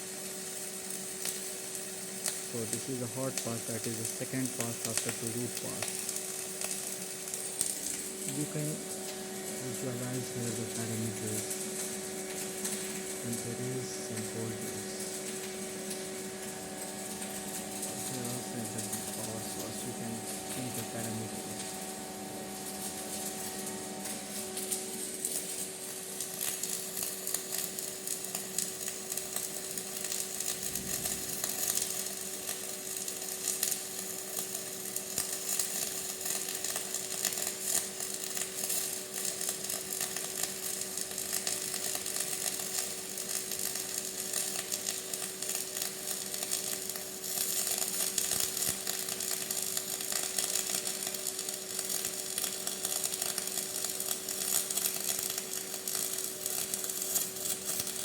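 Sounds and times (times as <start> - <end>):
welding arc crackling: 0.0 - 58.0
steady hum: 2.2 - 29.4, 30.0 - 32.4.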